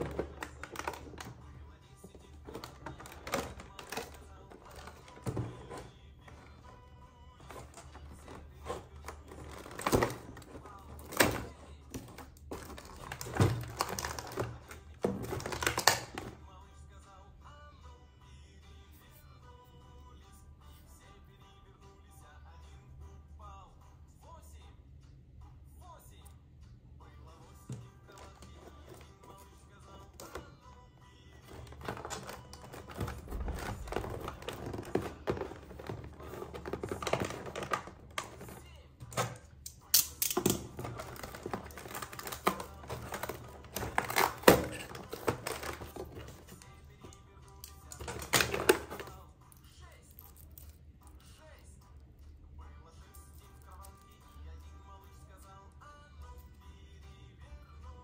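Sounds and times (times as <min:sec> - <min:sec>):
packaging rustling: 0:00.0 - 0:01.4, 0:02.0 - 0:06.8, 0:07.4 - 0:16.4, 0:28.1 - 0:30.5, 0:31.3 - 0:39.6, 0:40.2 - 0:49.2
plastic toys clicking and tapping: 0:00.0 - 0:01.4, 0:02.1 - 0:06.7, 0:07.4 - 0:16.4, 0:31.4 - 0:49.2.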